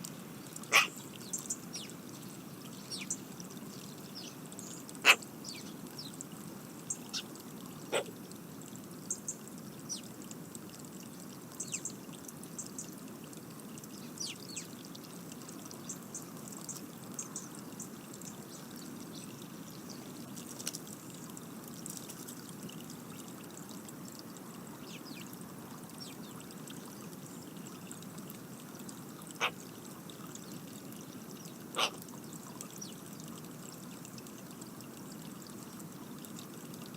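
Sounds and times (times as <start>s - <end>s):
birds chirping: 0.7s - 6.2s.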